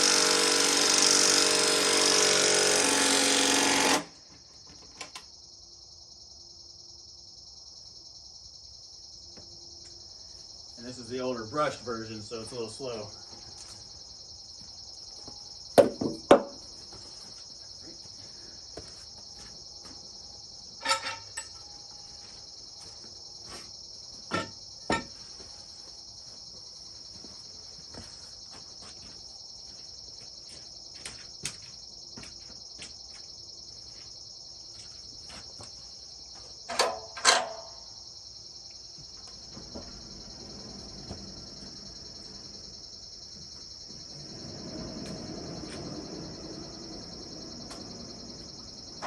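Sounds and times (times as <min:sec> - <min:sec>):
insect chorus: 0:00.0 - 0:49.0
short knocks and clunks: 0:15.8 - 0:16.6, 0:39.1 - 0:46.4.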